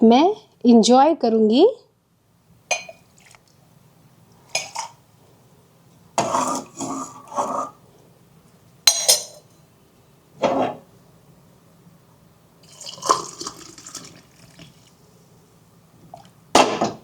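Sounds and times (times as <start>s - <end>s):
utensils clinking on pan and cup: 2.7s - 3.0s, 4.5s - 5.0s, 8.9s - 9.5s
liquid being poured: 2.9s - 3.6s, 12.6s - 15.1s.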